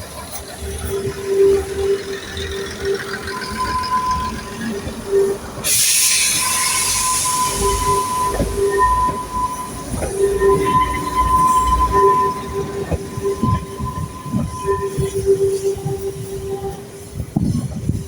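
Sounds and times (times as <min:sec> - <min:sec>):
train rumble: 0:00.0 - 0:18.0
train wheels squealing: 0:00.0 - 0:18.0
loud hiss: 0:05.6 - 0:08.2.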